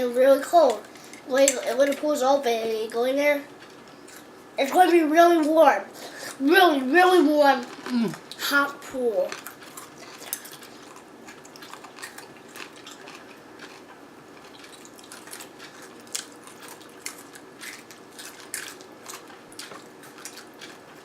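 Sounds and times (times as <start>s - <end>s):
people crunching snacks: 7.6s - 8.5s, 9.3s - 21.0s.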